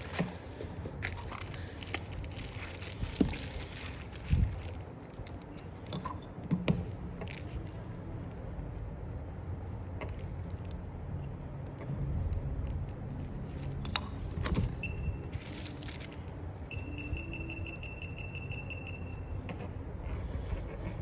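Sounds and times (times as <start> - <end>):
high-pitched electronic beeps: 16.7 - 19.4.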